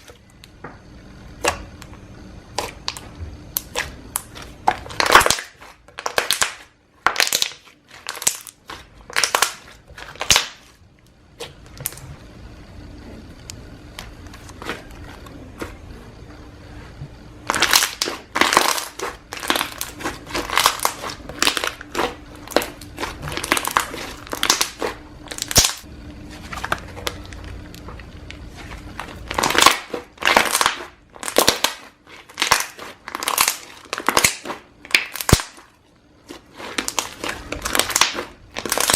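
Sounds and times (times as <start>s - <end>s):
slime crackling when squeezed: 29.3s - 35.6s, 36.7s - 38.9s.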